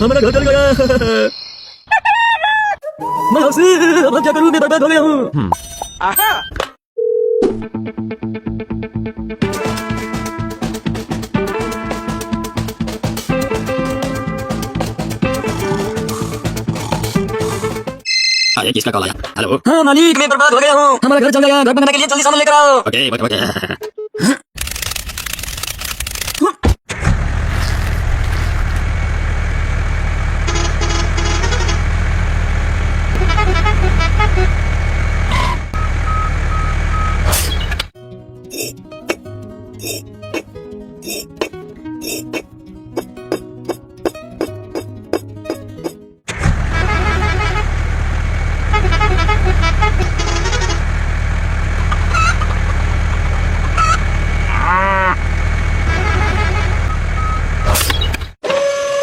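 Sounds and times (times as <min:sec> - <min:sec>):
truck engine running: 0:26.9 - 0:37.8, 0:46.3 - 0:58.3
truck horn toots: 0:30.4 - 0:32.0, 0:33.1 - 0:37.3, 0:46.6 - 0:47.9, 0:48.6 - 0:51.0, 0:53.8 - 0:57.8.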